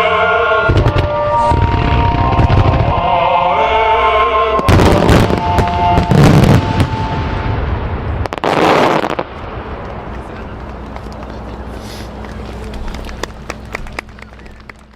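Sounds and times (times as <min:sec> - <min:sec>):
fireworks booming with crackle: 0:00.7 - 0:03.0, 0:04.6 - 0:12.2.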